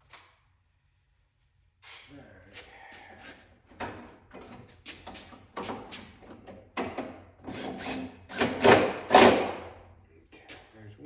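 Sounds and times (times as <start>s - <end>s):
tools scraping and knocking: 3.7s - 9.6s.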